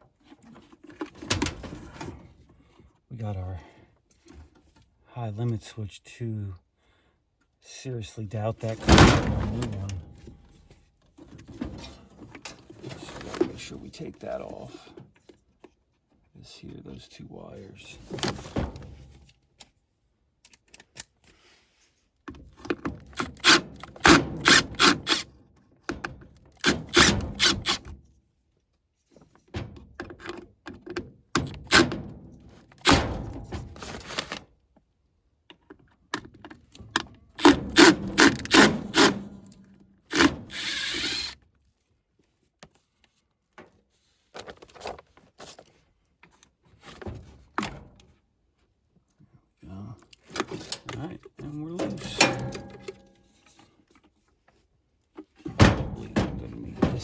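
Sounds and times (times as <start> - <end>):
hand tools clicking and scraping: 23.1 - 25.3, 26.5 - 27.9, 37.4 - 41.4.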